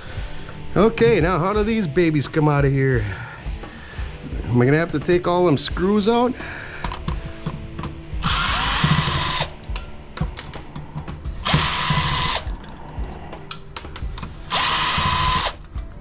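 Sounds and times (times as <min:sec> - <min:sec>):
parts clicking and rattling: 0:06.8 - 0:16.0
power drill running: 0:08.2 - 0:09.6, 0:11.4 - 0:12.6, 0:14.5 - 0:15.6.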